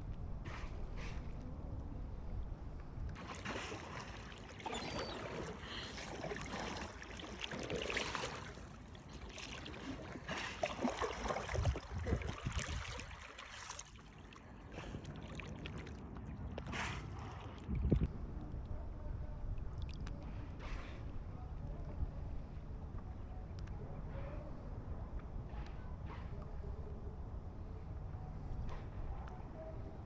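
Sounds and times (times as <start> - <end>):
steady low rumble: 0.0 - 3.2, 16.1 - 30.0
water splashing and sloshing: 0.1 - 18.7, 19.5 - 22.0.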